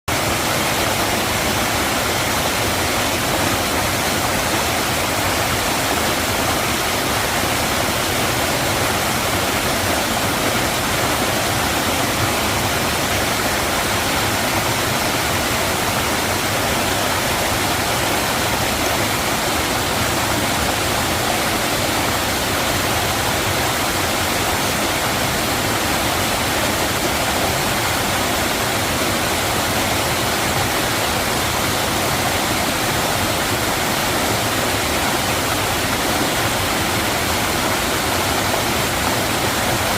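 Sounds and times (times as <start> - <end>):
stream rushing over rocks: 0.1 - 39.9.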